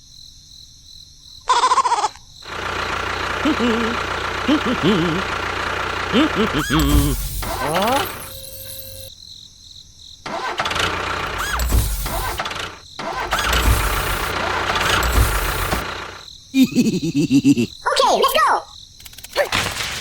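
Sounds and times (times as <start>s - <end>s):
engine running: 2.4s - 9.1s, 10.3s - 16.3s.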